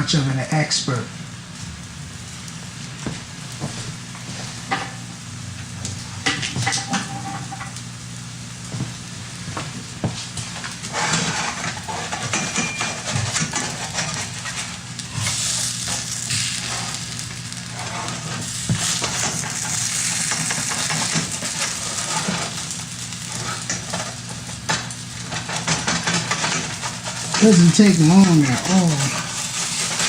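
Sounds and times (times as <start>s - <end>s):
batter sizzling in a frying pan: 0.1s - 30.0s
utensil scraping a pan: 10.9s - 17.0s.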